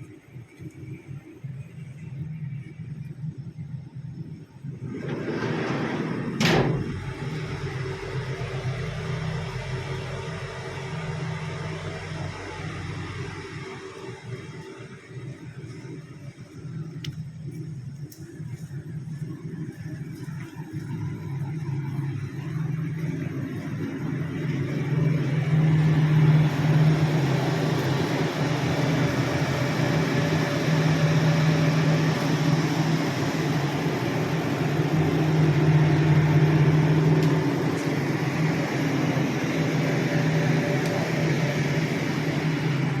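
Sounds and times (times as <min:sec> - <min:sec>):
dense machine noise: 0:00.0 - 0:43.0
drilling machine humming: 0:04.8 - 0:14.7, 0:20.8 - 0:43.0.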